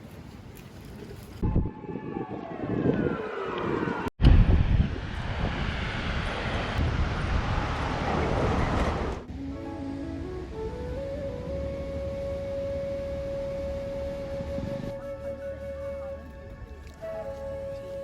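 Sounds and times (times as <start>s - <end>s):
traffic rumble: 3.0s - 18.0s
passing vehicle whine: 3.4s - 15.1s.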